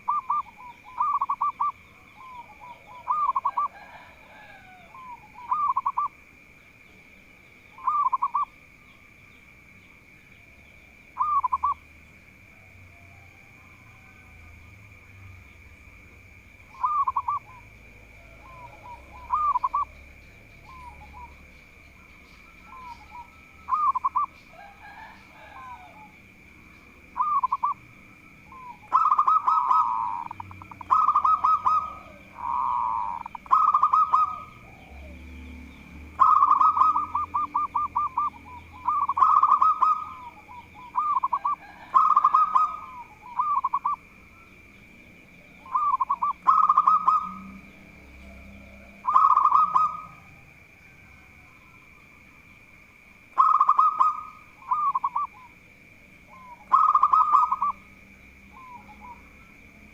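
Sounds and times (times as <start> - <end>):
dove cooing: 0.0 - 6.2, 7.7 - 8.6, 11.2 - 11.8, 16.6 - 26.3, 27.1 - 35.3, 36.1 - 44.3, 45.4 - 51.5, 53.3 - 55.6, 56.3 - 57.8.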